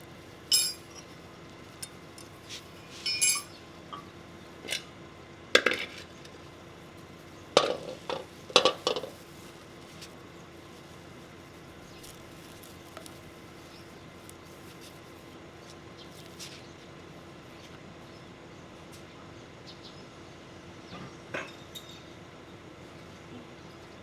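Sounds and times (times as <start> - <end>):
metal tools clinking: 0.5 - 1.1, 2.8 - 3.6.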